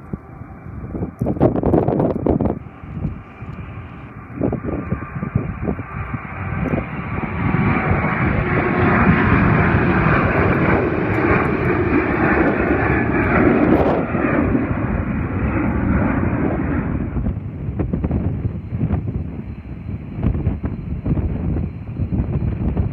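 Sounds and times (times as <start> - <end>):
jet engines roaring: 0.0 - 22.9
wind buffeting microphone: 0.0 - 22.9.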